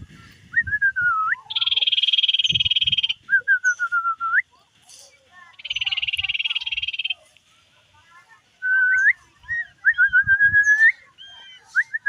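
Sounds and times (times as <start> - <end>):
bird whistled notes: 0.6 - 4.4, 5.6 - 7.2, 8.7 - 12.0
bird buzzy trill: 1.4 - 3.8, 5.6 - 7.2.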